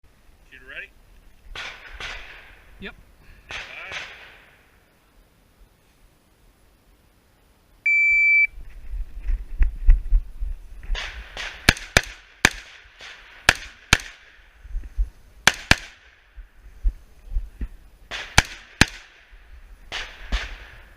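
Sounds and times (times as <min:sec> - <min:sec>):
rifle shots: 0:01.5 - 0:02.6, 0:03.5 - 0:04.6, 0:10.9 - 0:14.3, 0:15.4 - 0:16.2, 0:18.1 - 0:19.3, 0:19.9 - 0:20.9
shot timer beep: 0:07.9 - 0:08.5
rustling and thumps of movement: 0:08.6 - 0:11.6, 0:14.6 - 0:15.5, 0:16.3 - 0:18.4.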